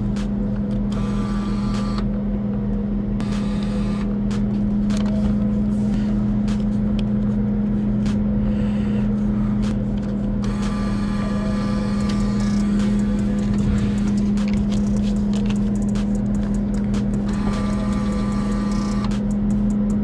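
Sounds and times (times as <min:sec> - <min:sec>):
low mechanical hum: 0:00.0 - 0:20.0
sharp clicks and clatter: 0:11.9 - 0:20.0.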